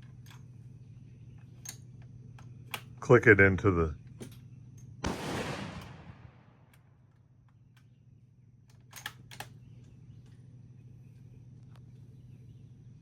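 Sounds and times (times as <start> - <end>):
rifle shot: 5.0 - 6.9.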